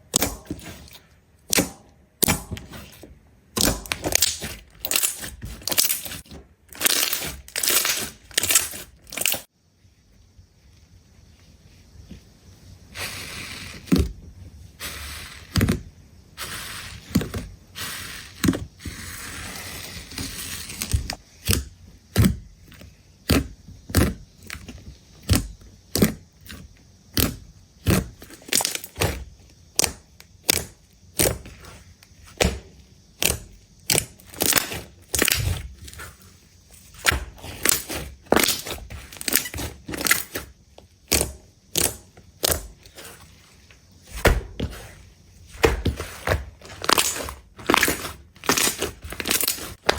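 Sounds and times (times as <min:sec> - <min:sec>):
slime crinkling: 0:02.5 - 0:09.5, 0:36.9 - 0:40.5, 0:44.4 - 0:49.9.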